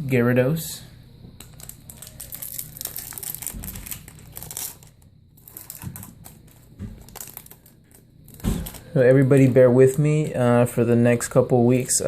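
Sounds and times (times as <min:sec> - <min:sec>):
foil wrapper crinkling: 0:01.4 - 0:10.4.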